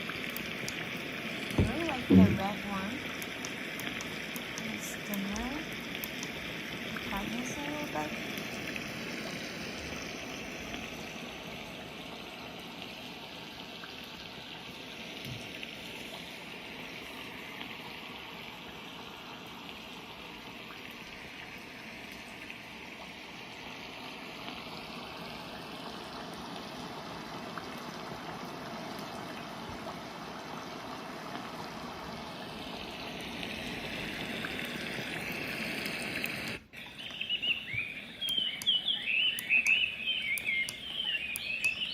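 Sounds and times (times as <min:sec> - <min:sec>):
trickling stream from speaker: 0:00.0 - 0:41.9
short chirping calls: 0:36.8 - 0:41.9.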